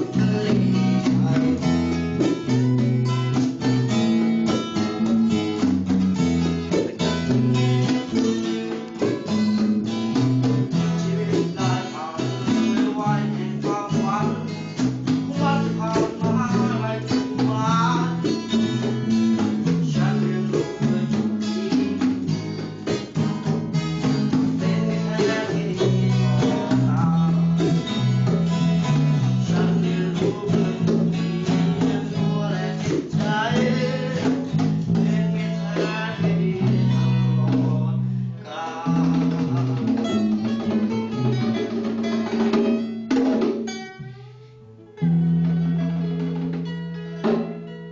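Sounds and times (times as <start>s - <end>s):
person singing: 0.0s - 2.4s, 10.4s - 22.3s, 24.4s - 40.5s
bass line: 0.0s - 41.7s
strummed acoustic guitar: 0.0s - 47.9s.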